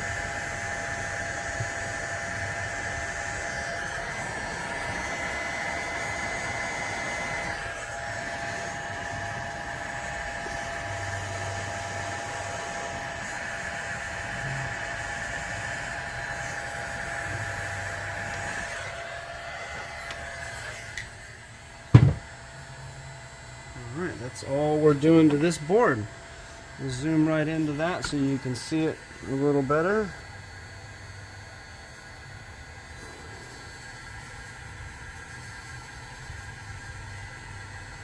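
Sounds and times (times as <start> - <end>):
hot air blower whining: 0.0 - 38.0
sharp knock: 21.9 - 22.2.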